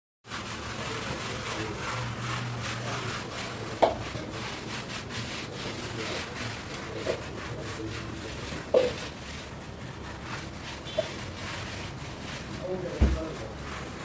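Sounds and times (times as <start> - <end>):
hand scrubbing a hard surface: 0.2 - 14.0
knock: 13.0 - 13.4.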